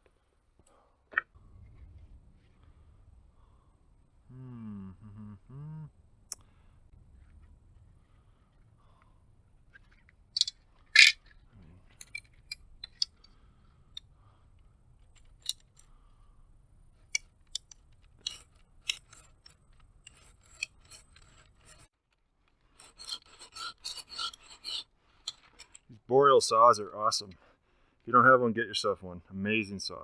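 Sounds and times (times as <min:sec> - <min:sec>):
wood and tools clicking: 0:08.9 - 0:16.1, 0:17.0 - 0:25.9
saw rasping through wood: 0:22.8 - 0:25.4.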